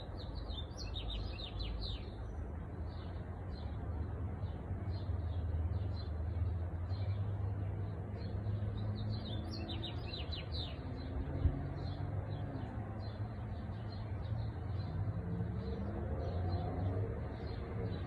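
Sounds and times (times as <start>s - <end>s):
birds chirping: 0.0s - 3.8s, 4.4s - 18.0s.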